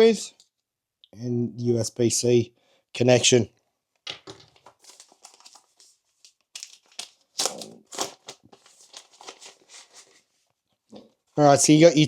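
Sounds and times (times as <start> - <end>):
packaging crinkling and rustling: 4.4 - 10.2.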